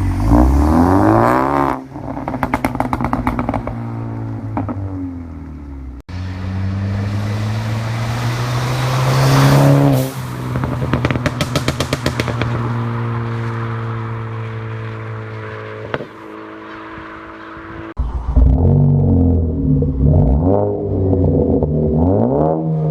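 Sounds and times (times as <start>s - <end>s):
turbocharged engine revving: 0.0s - 3.8s, 6.1s - 12.8s, 13.8s - 22.9s
exhaust crackles and pops: 1.9s - 5.6s, 10.5s - 12.8s, 14.8s - 16.4s.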